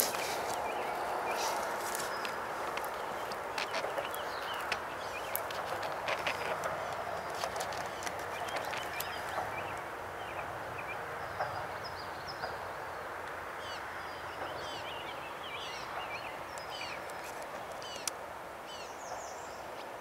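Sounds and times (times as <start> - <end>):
birds chirping and whistling: 0.0 - 11.0
outdoor background hiss: 0.0 - 20.0
faint clicks: 1.4 - 10.5.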